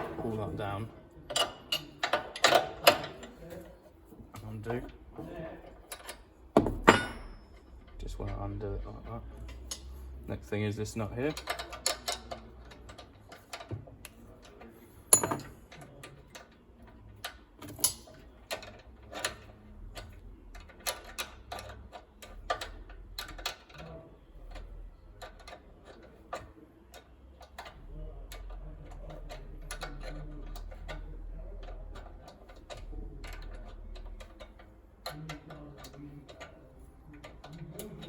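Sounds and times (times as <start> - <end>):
spanner clicking on metal nut: 1.3 - 3.4, 5.8 - 6.2, 9.4 - 9.9, 11.3 - 23.9, 24.5 - 38.0
metallic knock: 15.2 - 15.4.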